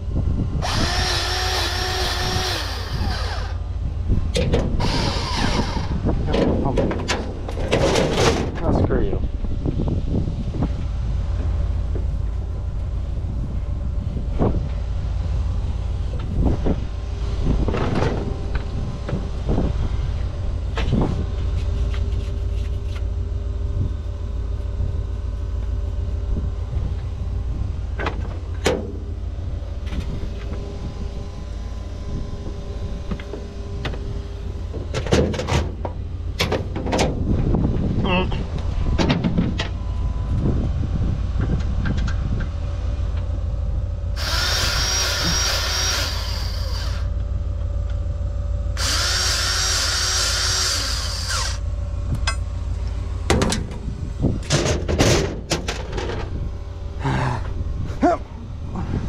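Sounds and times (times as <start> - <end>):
engine low rumble: 0.0 - 59.0
steady hum: 0.0 - 59.0
metallic clanks and knocks: 53.3 - 53.8, 54.4 - 56.3.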